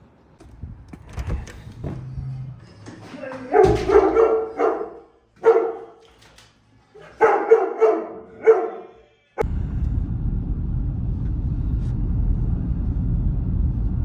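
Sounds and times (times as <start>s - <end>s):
dog barking: 3.3s - 6.1s, 7.0s - 9.1s
steady low rumble: 9.4s - 14.0s.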